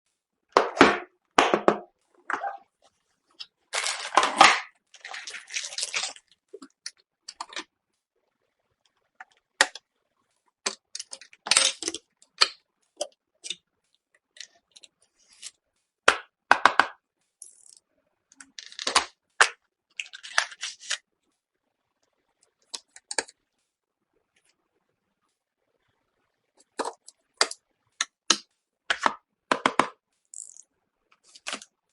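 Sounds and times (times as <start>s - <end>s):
handling computer parts and packaging: 3.4s - 7.7s.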